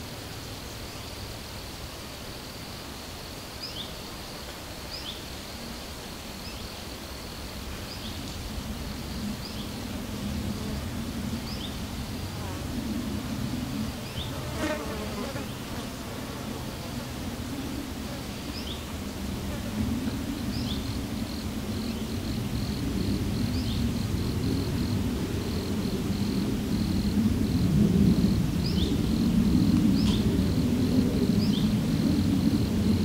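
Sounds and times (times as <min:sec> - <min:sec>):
insect buzzing: 0:10.5 - 0:22.8.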